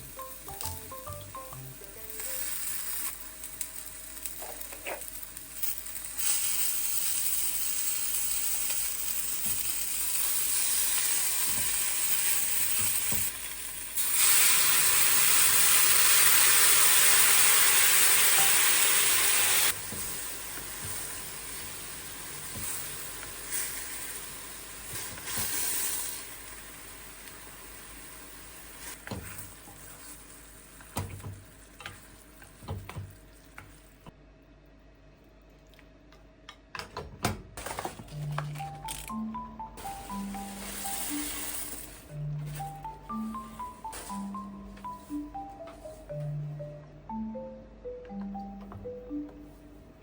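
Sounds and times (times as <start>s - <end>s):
food sizzling in a frying pan: 0.0s - 30.6s, 39.8s - 42.0s.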